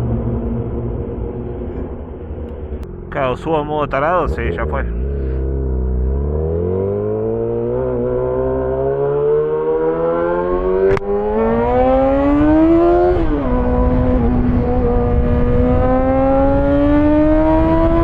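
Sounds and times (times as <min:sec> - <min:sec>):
motorcycle engine revving: 0:04.2 - 0:18.0.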